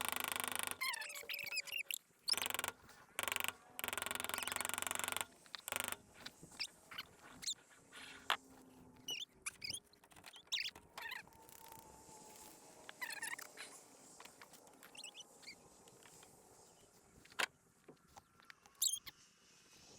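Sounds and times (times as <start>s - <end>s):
impact wrench bursts: 0.0s - 0.9s, 2.3s - 6.0s
small birds chirping: 0.4s - 19.3s.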